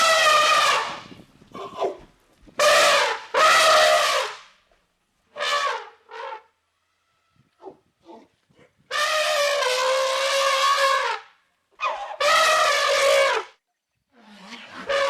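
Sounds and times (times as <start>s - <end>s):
elephant trumpeting: 0.0s - 2.0s, 2.6s - 4.4s, 8.9s - 13.5s, 14.4s - 15.0s.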